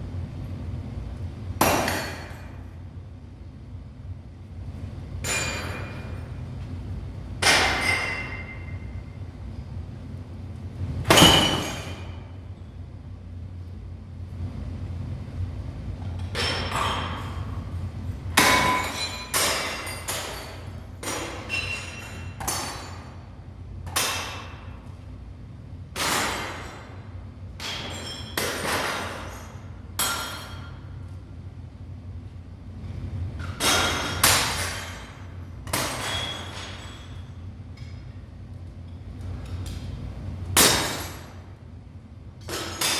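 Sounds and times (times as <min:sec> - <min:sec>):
steady low hum: 0:00.0 - 0:42.9
hard objects crashing with ringing: 0:01.6 - 0:02.6, 0:05.2 - 0:06.2, 0:07.4 - 0:08.9, 0:11.1 - 0:12.2, 0:18.4 - 0:23.1, 0:27.6 - 0:30.8, 0:33.6 - 0:37.3, 0:40.6 - 0:41.4.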